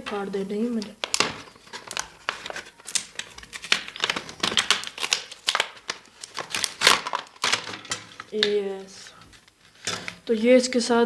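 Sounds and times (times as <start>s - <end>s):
cardboard box being torn open: 1.0s - 7.6s.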